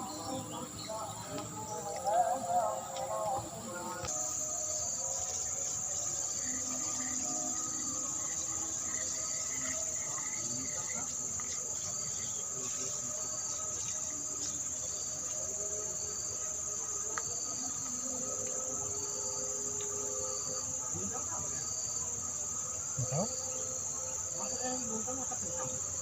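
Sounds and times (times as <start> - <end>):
insects chirring: 0.0 - 26.0.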